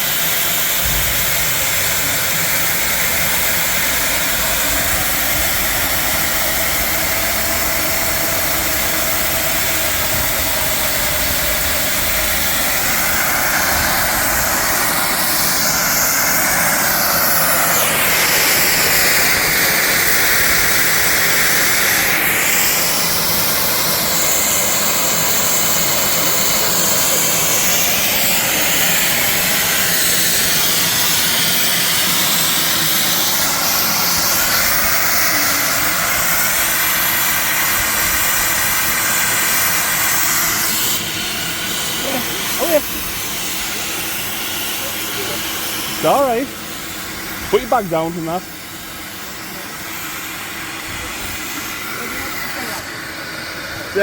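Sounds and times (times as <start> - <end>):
diesel engine sound from speaker: 0.0 - 40.0, 41.7 - 44.0.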